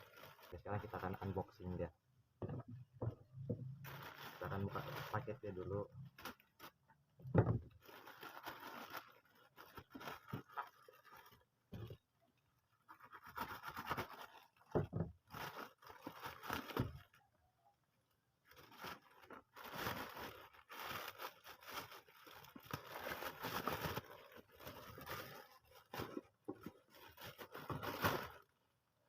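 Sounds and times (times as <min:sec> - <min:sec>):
packaging tearing and rustling: 0:07.7 - 0:11.5, 0:13.0 - 0:17.2, 0:18.5 - 0:28.5.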